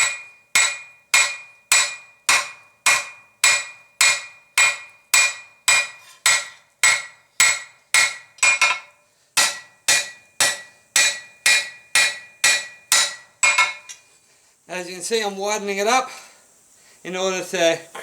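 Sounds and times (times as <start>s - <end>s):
hammer striking steel on anvil: 0.0s - 14.0s.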